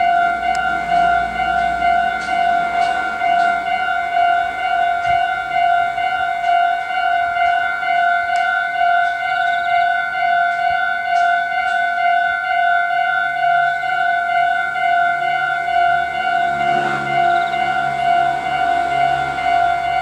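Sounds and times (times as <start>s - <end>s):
level crossing warning bell: 0.0s - 20.0s.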